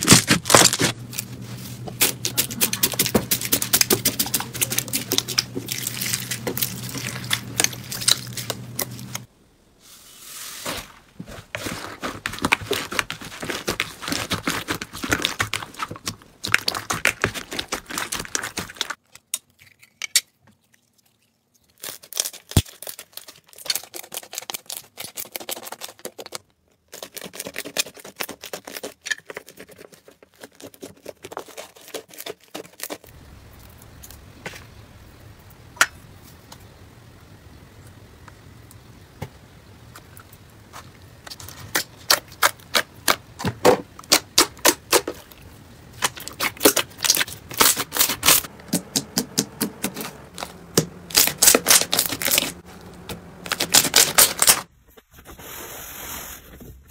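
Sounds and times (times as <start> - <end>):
crunchy slime crackling: 0.0 - 9.3, 11.5 - 19.0, 21.6 - 34.3, 39.8 - 54.7.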